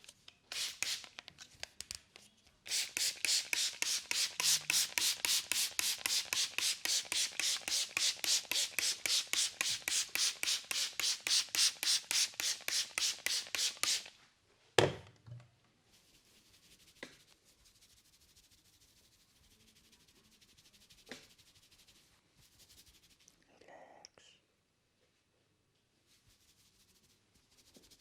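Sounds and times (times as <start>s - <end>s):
hands rubbing hair and scalp: 0.5s - 2.0s, 2.7s - 14.1s, 15.9s - 23.4s, 26.1s - 28.0s.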